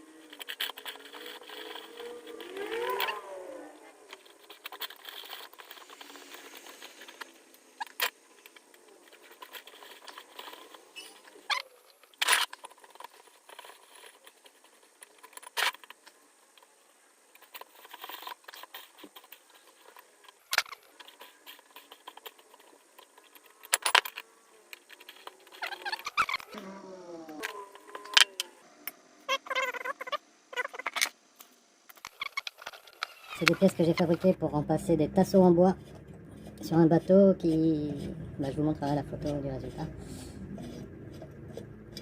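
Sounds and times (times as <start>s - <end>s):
handling clicks and knocks: 17.4s - 26.6s.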